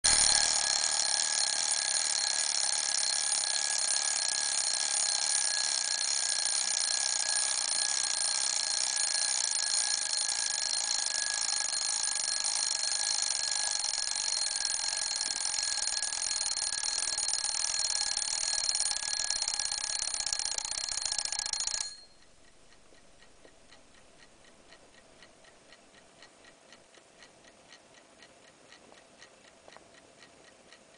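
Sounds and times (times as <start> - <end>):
alarm clock bell ringing: 0.1 - 22.2
clock ticking faintly: 0.1 - 30.9.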